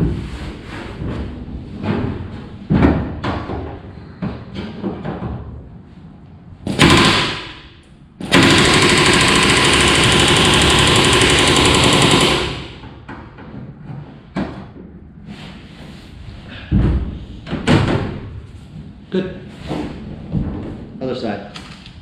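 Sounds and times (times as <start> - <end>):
rivet gun hammering metal: 6.7 - 12.8.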